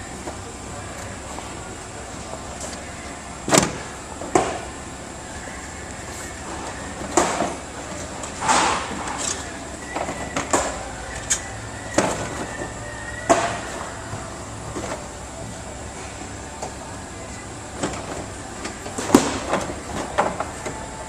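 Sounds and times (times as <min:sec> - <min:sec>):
faint steady whine: 0:00.0 - 0:21.0
car body panels clicking and knocking: 0:07.0 - 0:07.6, 0:17.8 - 0:20.8.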